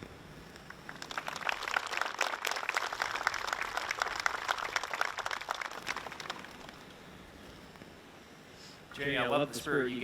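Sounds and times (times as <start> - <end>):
audience applauding: 0.7 - 6.8.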